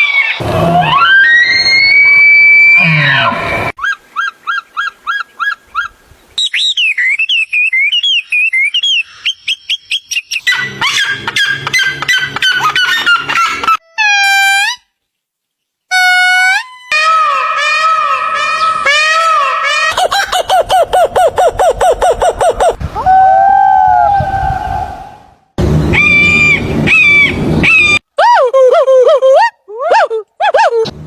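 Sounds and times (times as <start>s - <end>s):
fast pulsing bird call: 3.8s - 13.7s, 25.9s - 28.0s
bird warbling whistle: 25.8s - 28.0s.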